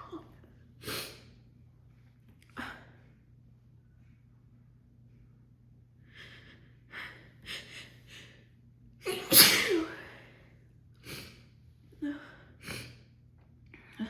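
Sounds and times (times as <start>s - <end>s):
woman sneezing: 9.1s - 10.2s.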